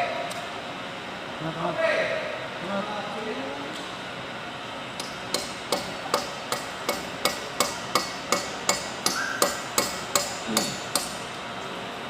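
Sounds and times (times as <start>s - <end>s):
hammer striking metal: 5.0s - 11.2s.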